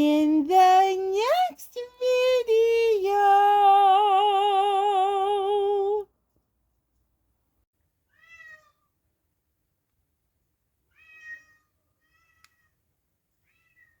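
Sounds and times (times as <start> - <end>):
cat meowing quietly: 8.1 - 8.9, 10.9 - 12.7.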